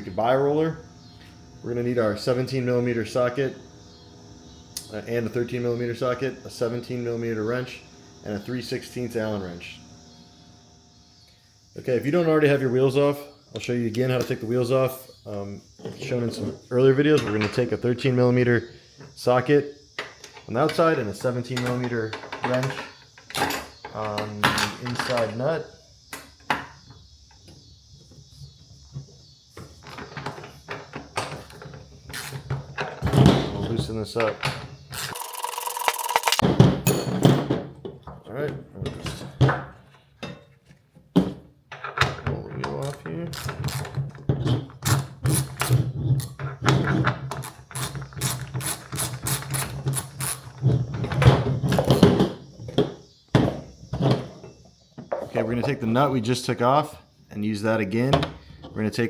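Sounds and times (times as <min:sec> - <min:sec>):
steady low hum: 0:00.0 - 0:12.7
hand tools clicking on metal: 0:35.0 - 0:36.4
ratchet clicking: 0:35.0 - 0:36.4, 0:47.4 - 0:50.5.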